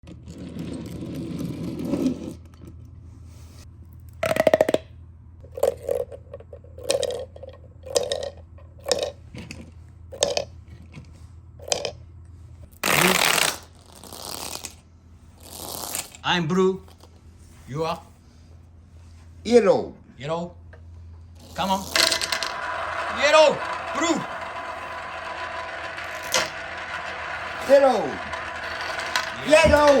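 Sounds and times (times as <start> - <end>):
marbles rolling on wooden track: 5.6 - 9.6, 10.2 - 10.6, 21.4 - 30.0.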